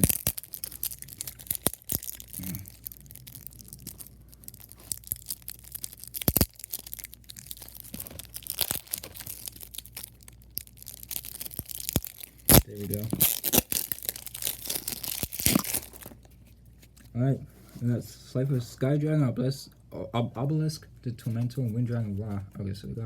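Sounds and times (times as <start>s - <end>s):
packaging torn and crinkled: 0.0s - 17.0s.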